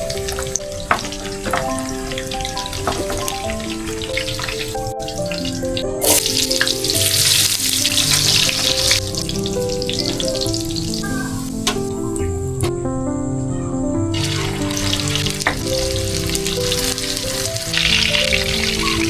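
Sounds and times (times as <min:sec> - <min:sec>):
soft background music: 0:00.0 - 0:19.0
food sizzling in a pan: 0:05.4 - 0:11.5, 0:14.2 - 0:19.0.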